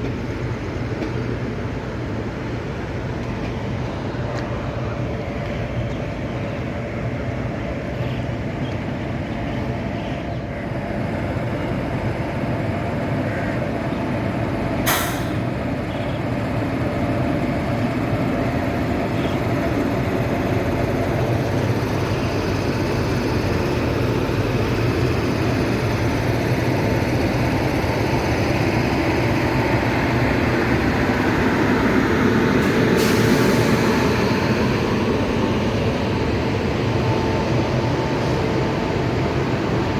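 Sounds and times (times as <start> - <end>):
train rumbling: 0.0 - 39.9
air brake hiss: 14.8 - 15.5, 32.6 - 34.0.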